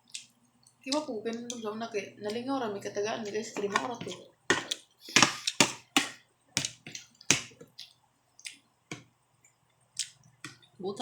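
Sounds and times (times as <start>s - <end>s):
eating crunches and clicks: 0.0s - 1.6s, 6.6s - 8.6s, 10.0s - 10.6s.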